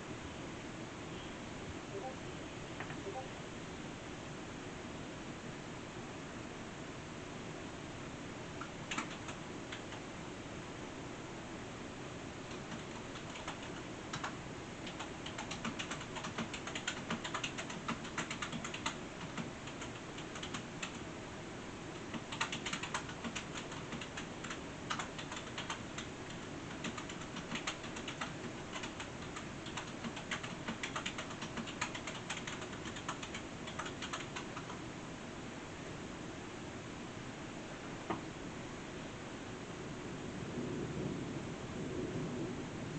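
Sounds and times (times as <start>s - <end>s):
steady background hiss: 0.0s - 42.9s
computer keyboard typing: 8.6s - 10.0s, 12.5s - 21.0s, 22.0s - 34.8s.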